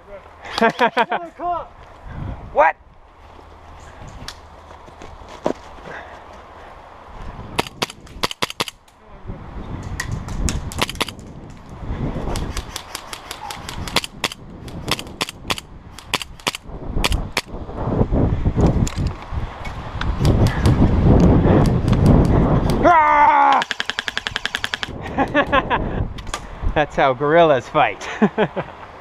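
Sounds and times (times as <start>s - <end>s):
airsoft guns firing: 7.6s - 8.8s, 10.8s - 11.2s, 23.6s - 24.9s.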